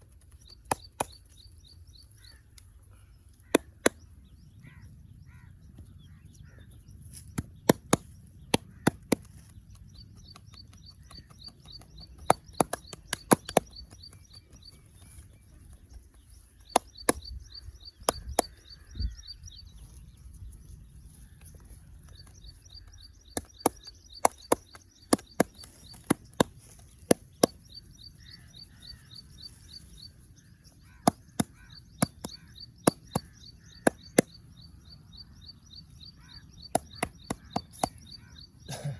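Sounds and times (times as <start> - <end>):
hand strikes of massage: 0.4 - 1.4, 7.1 - 9.6, 10.3 - 14.6, 16.6 - 18.9, 30.9 - 34.4, 36.7 - 38.1.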